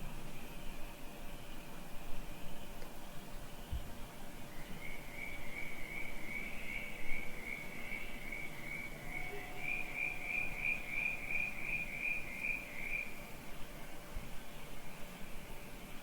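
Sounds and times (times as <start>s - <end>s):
cricket chirping: 4.4s - 14.0s.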